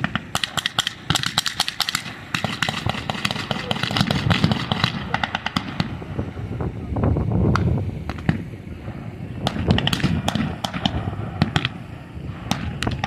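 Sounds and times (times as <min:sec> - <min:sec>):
blank gunshots: 0:00.0 - 0:06.0
low rumble: 0:01.9 - 0:13.0.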